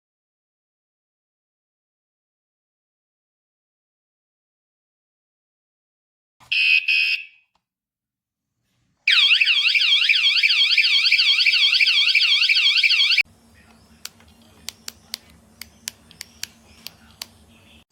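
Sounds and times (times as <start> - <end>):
alarm siren warbling: 9.1 - 13.2.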